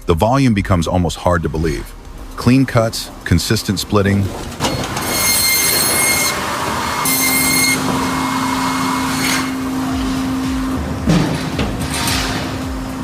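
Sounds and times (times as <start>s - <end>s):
firewood processor machine drone: 4.3s - 13.0s
high-pitched machine squeals: 4.6s - 10.4s.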